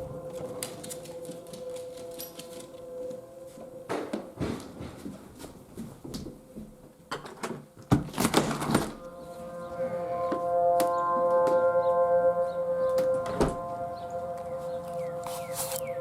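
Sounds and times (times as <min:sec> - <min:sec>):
distant warning siren: 0:00.0 - 0:04.5, 0:08.9 - 0:16.0.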